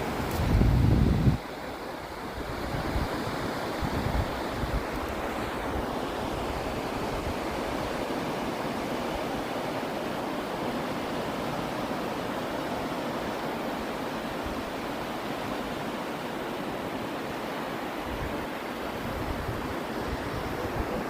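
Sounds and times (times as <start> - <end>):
wind buffeting microphone: 0.0 - 1.5, 2.4 - 8.0, 18.0 - 21.0
ocean surf washing onto beach: 0.0 - 21.0.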